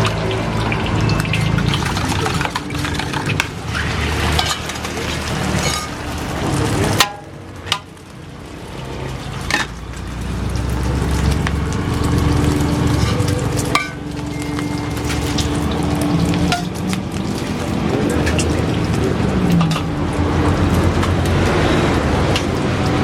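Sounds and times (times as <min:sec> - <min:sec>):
food sizzling in a wok: 0:00.0 - 0:23.0
metal spatula scraping a pan: 0:02.9 - 0:06.1, 0:12.9 - 0:14.2.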